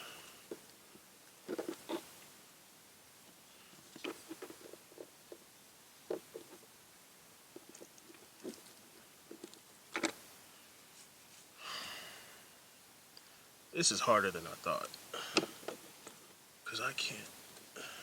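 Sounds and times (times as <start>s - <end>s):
person exhaling: 11.6s - 12.5s, 15.1s - 15.5s.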